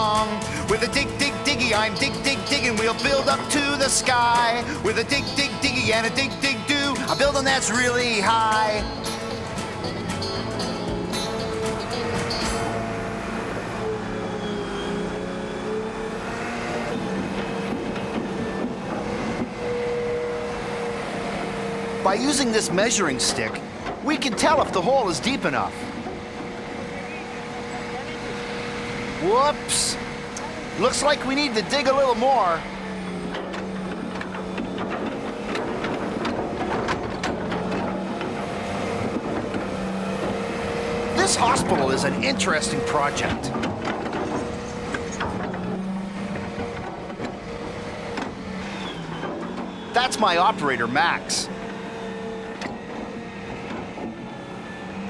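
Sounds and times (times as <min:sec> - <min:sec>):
clicks and clanks: 0:00.0 - 0:13.1, 0:23.1 - 0:27.7, 0:32.0 - 0:50.6, 0:51.2 - 0:55.0
excavator diesel engine running: 0:00.0 - 0:55.0.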